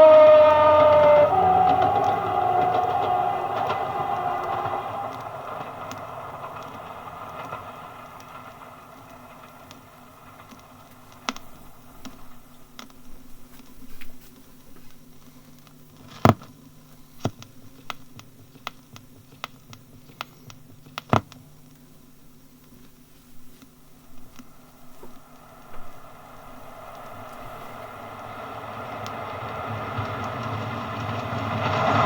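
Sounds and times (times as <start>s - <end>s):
train: 0.0s - 15.6s, 23.0s - 32.0s
record surface hiss and crackle: 0.0s - 32.0s
sharp clicks and pops: 15.5s - 21.9s.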